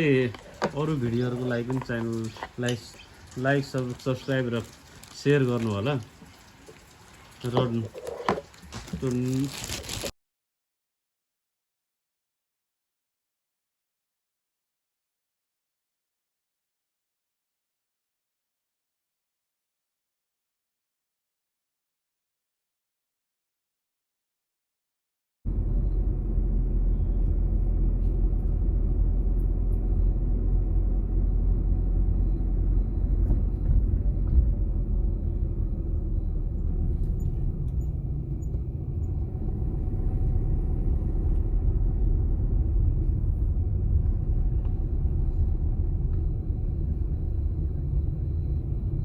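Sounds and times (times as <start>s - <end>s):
car driving road and engine noise: 25.5s - 49.0s.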